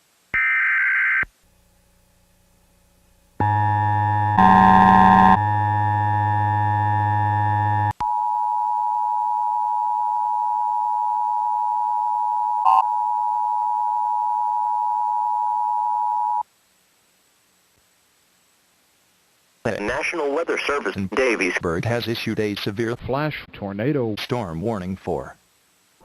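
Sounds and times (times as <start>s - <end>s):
sustained synthesizer chord: 3.4s - 7.9s
two-tone electronic alert tone: 3.4s - 16.4s.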